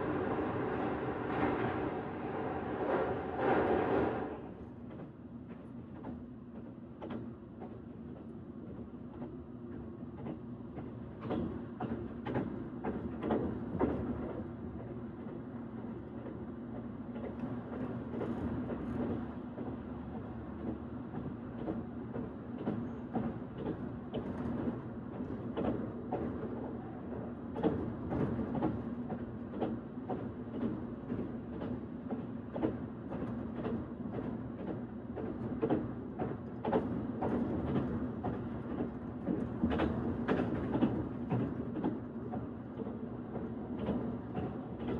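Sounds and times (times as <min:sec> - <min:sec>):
train rumbling on track: 0:00.0 - 0:44.9.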